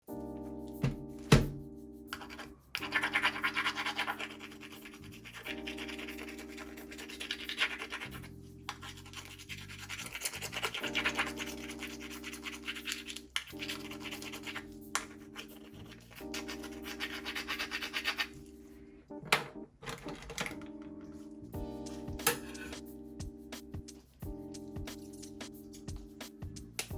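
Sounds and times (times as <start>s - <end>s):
soft background music: 0.0s - 26.9s
shells being scrubbed: 2.1s - 18.4s.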